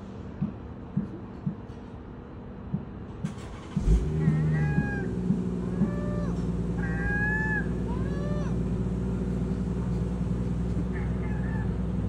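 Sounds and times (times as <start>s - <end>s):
engine starting thump: 3.2s - 4.9s
vehicle engine humming: 3.2s - 12.0s
gulls mewing: 3.8s - 12.0s.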